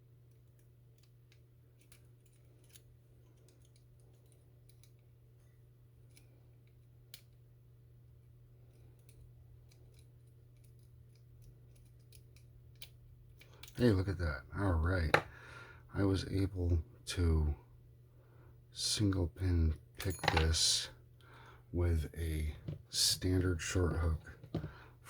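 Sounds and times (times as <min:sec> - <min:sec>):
steady low hum: 0:00.0 - 0:25.0
lock pick clicking on padlock pins: 0:00.3 - 0:05.1, 0:08.7 - 0:13.8.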